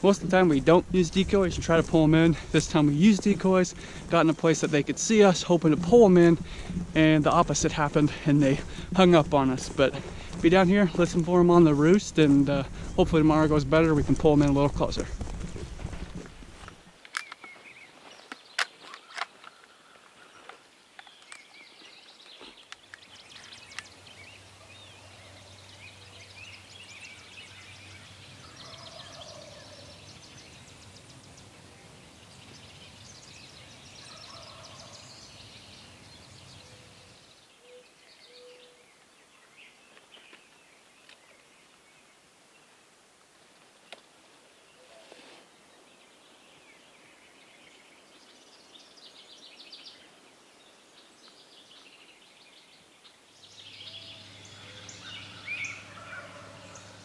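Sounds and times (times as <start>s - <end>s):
songbirds chirping: 0.0s - 15.0s, 15.6s - 57.0s
low steady rumble: 5.6s - 16.7s
turkeys gobbling: 27.5s - 33.1s, 34.0s - 35.5s, 54.5s - 56.8s.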